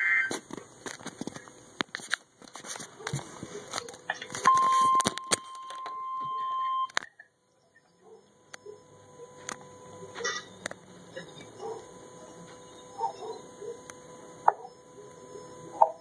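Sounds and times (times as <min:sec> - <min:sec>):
radio static and clicks: 0:00.0 - 0:06.0, 0:06.9 - 0:16.0
steady high alarm beep: 0:04.4 - 0:16.0
weather radio click: 0:09.3 - 0:11.6.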